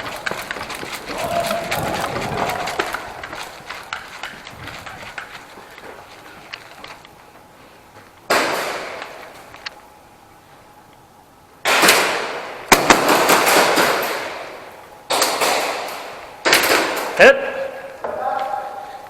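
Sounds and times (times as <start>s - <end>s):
footsteps: 0.0s - 9.8s.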